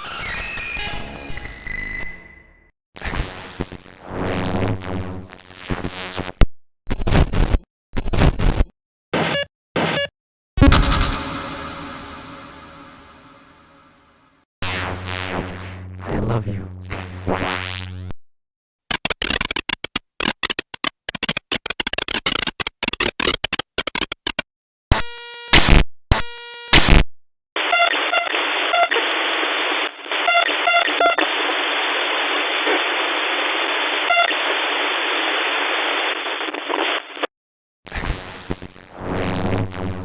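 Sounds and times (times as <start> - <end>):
stutter of chopped digital noise: 7.0 - 13.2, 18.9 - 27.0, 27.7 - 37.3
beeping blips: 9.2 - 13.4, 30.2 - 31.2
short buzzing electronic tones: 9.2 - 13.5, 27.6 - 29.0, 30.2 - 31.3
static hiss: 27.6 - 37.3.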